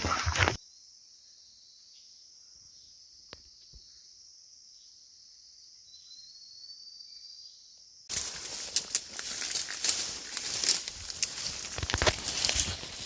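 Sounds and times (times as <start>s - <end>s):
insects chorus: 0.0s - 13.0s
loud rustling and crackling: 8.1s - 13.0s.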